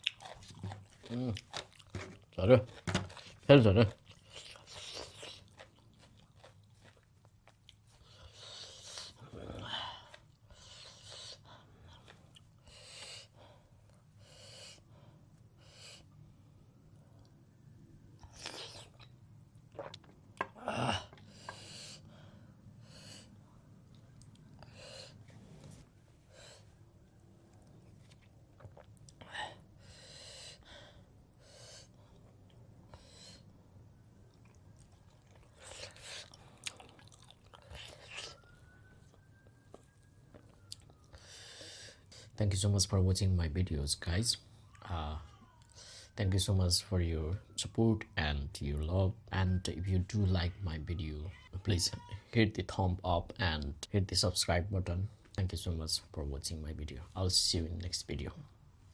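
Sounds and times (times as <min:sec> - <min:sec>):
chewing and mouth noises: 0:00.0 - 0:09.3, 0:18.2 - 0:20.6, 0:27.4 - 0:29.3, 0:34.1 - 0:41.2.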